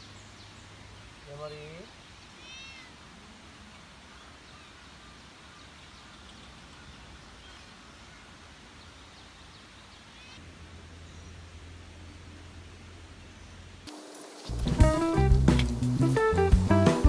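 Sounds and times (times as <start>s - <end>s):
quiet outdoor background noise: 0.0s - 17.0s
faint high animal calls: 2.3s - 3.0s.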